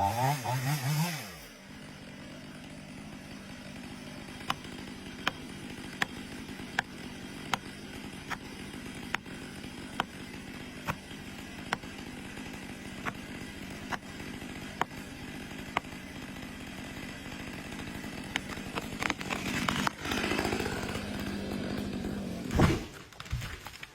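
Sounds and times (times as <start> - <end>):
saw blade cutting log: 0.0 - 22.9
band saw humming and ticking: 1.6 - 22.4
loud thump: 22.5 - 23.0.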